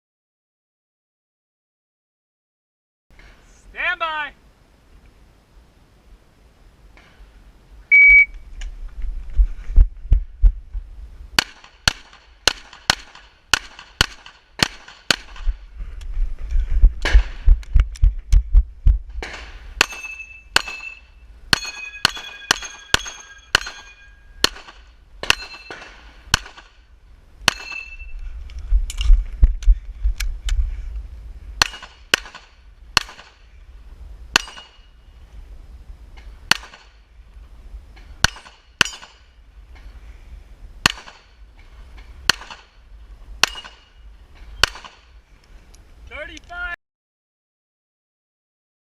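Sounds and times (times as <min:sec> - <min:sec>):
shot timer beep: 0:07.9 - 0:08.4
pistol shots: 0:11.4 - 0:15.4, 0:19.2 - 0:26.8, 0:31.6 - 0:33.4, 0:42.3 - 0:42.7, 0:43.4 - 0:43.8, 0:44.6 - 0:45.0
steel targets ringing: 0:19.8 - 0:24.6, 0:25.2 - 0:26.0, 0:27.5 - 0:28.1.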